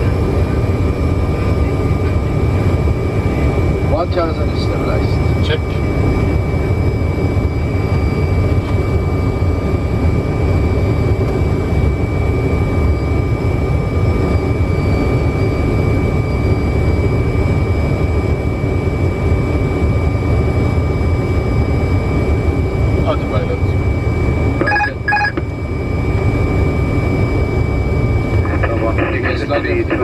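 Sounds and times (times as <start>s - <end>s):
aircraft airflow and engine rumble: 0.0s - 30.0s
steady high whine: 0.0s - 30.0s.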